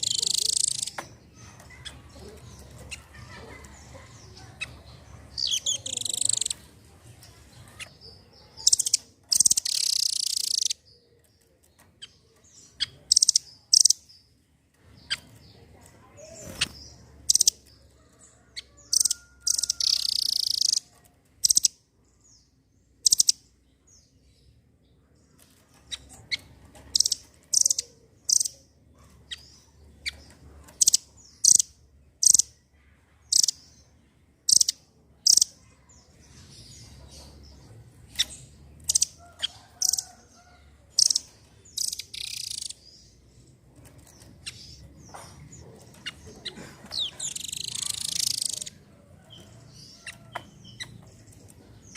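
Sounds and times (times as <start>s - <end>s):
bird rapid trill: 0.0s - 6.6s, 7.8s - 10.8s, 16.4s - 17.6s, 18.8s - 21.7s, 23.0s - 23.4s, 29.3s - 32.5s, 34.5s - 35.6s, 40.9s - 42.8s, 45.8s - 48.8s
bird high chirps: 0.0s - 6.8s, 7.6s - 14.3s, 15.0s - 24.1s, 25.8s - 51.9s.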